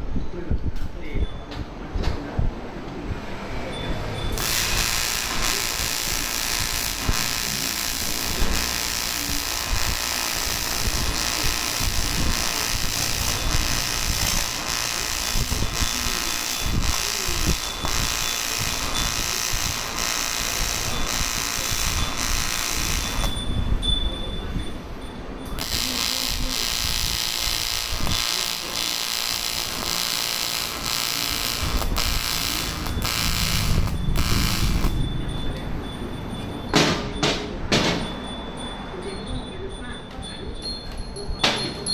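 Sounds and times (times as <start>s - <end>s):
welding arc buzzing hiss: 4.3s - 23.8s, 25.5s - 35.0s.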